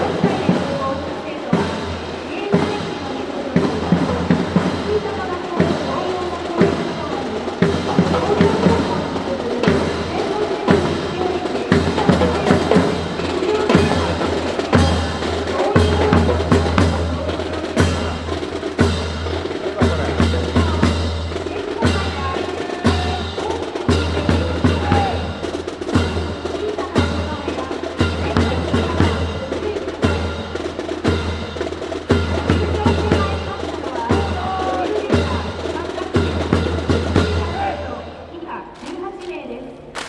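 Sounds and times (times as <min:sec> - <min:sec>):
snare drum rolls: 0:00.0 - 0:40.0
bass drum beats: 0:07.4 - 0:38.0.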